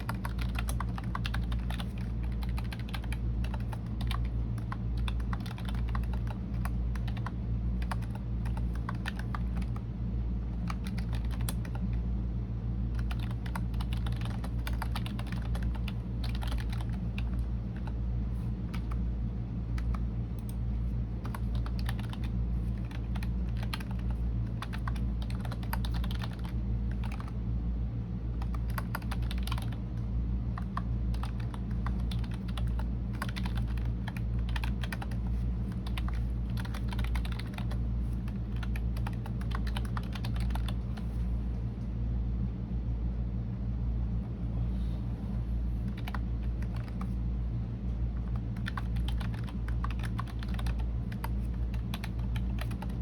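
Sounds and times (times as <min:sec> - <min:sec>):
keyboard typing: 0:00.0 - 0:09.8, 0:10.6 - 0:11.9, 0:12.9 - 0:18.0, 0:18.7 - 0:19.0, 0:19.7 - 0:20.6, 0:21.2 - 0:27.4, 0:28.4 - 0:29.8, 0:30.6 - 0:41.2, 0:45.8 - 0:47.2, 0:48.2 - 0:53.0.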